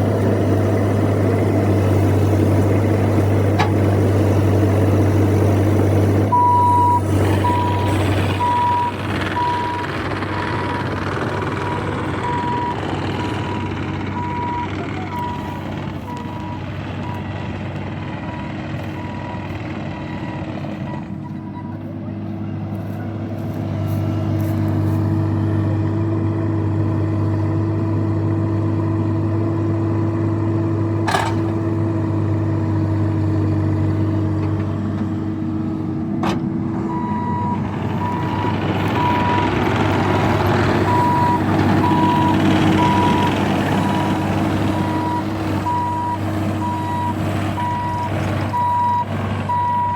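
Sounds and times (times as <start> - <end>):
diesel machine running: 0.0 - 49.9
backup alarm beeping: 6.3 - 10.6.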